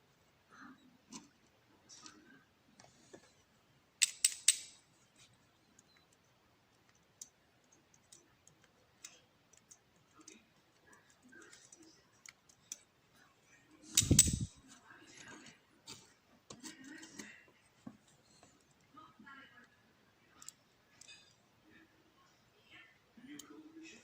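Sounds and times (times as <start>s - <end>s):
metallic clicks of lock parts: 4.0s - 4.8s, 13.9s - 14.6s.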